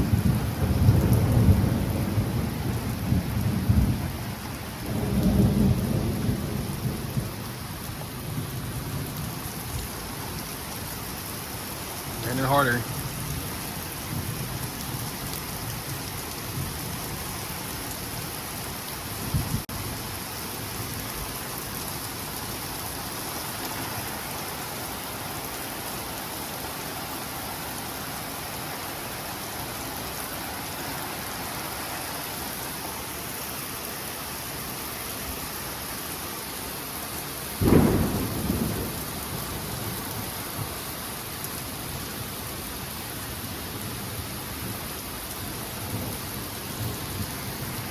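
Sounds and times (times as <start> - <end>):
thunderclap rumbling: 0.0 - 4.2, 4.8 - 9.2, 37.6 - 40.3
hard rain falling: 0.0 - 47.9.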